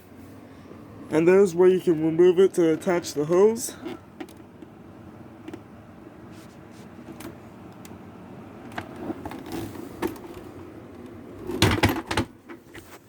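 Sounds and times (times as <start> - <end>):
handling clicks and knocks: 2.6 - 4.8, 8.6 - 12.9
knocks and clatter: 11.4 - 12.7.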